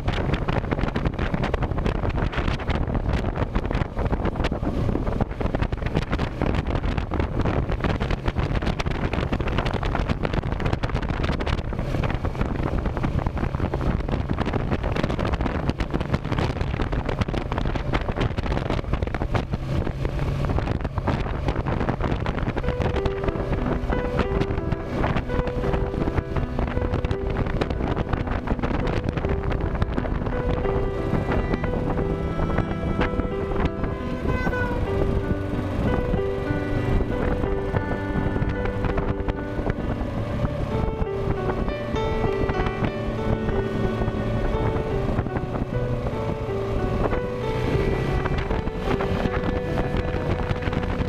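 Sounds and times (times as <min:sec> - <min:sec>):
wind buffeting microphone: 0:00.0 - 0:51.0
music: 0:22.5 - 0:51.0.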